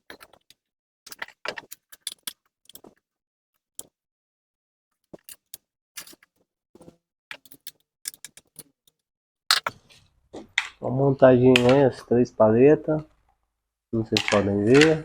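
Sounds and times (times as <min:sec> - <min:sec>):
small metal parts clicking: 0:00.0 - 0:03.0, 0:05.0 - 0:06.3, 0:07.3 - 0:09.7.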